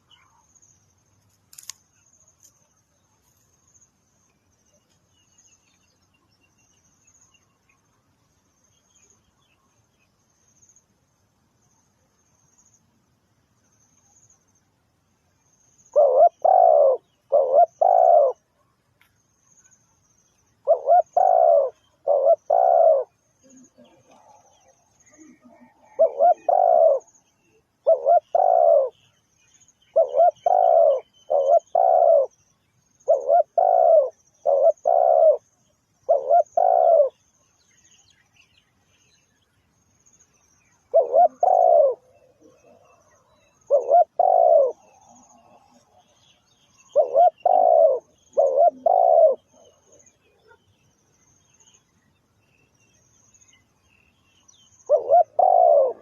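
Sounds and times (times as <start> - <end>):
faint high chirping: 0.0 - 56.0
dove cooing: 15.9 - 18.5, 20.6 - 29.1, 29.9 - 32.4, 33.0 - 35.4, 36.0 - 37.2, 40.9 - 46.2, 46.8 - 50.6, 54.8 - 56.0.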